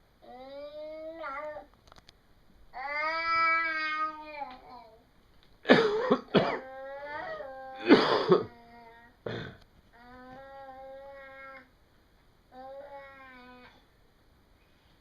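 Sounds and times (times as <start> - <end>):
child making harsh cough-like noises: 5.7 - 9.6.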